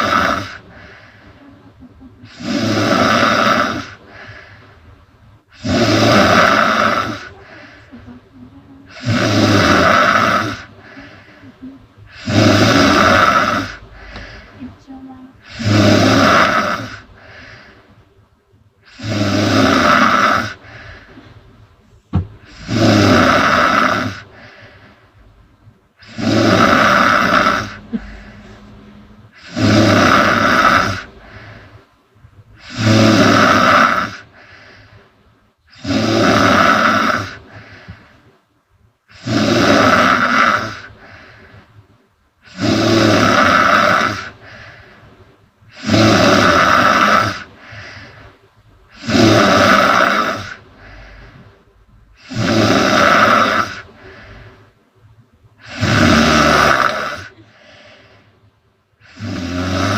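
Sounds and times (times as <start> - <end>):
woman snoring loudly: 0.0 - 4.0, 5.5 - 14.7, 15.4 - 17.1, 18.8 - 20.7, 22.4 - 24.3, 26.0 - 31.4, 32.6 - 34.4, 35.7 - 37.4, 39.1 - 40.9, 42.4 - 44.4, 45.8 - 47.5, 49.0 - 50.6, 52.2 - 54.0, 55.6 - 57.4, 59.0 - 59.9
soft breath out: 13.7 - 14.7, 26.8 - 31.9.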